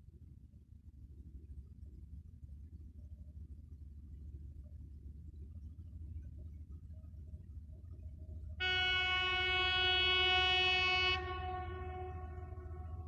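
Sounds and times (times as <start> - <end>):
low background rumble: 0.0 - 13.0
train horn: 8.6 - 13.0.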